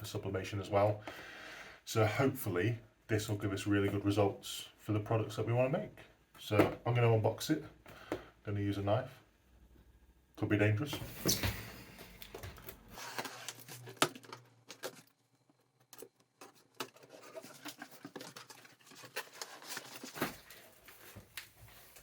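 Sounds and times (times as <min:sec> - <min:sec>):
cardboard rustling: 0:11.1 - 0:22.0.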